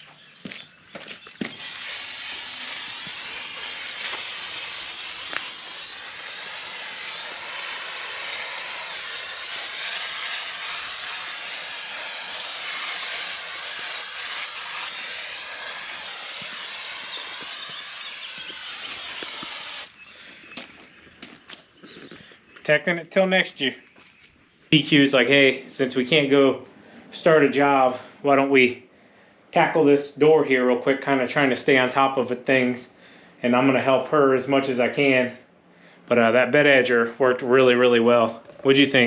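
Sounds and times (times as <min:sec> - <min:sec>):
pressurised spray hiss: 0:01.6 - 0:19.9.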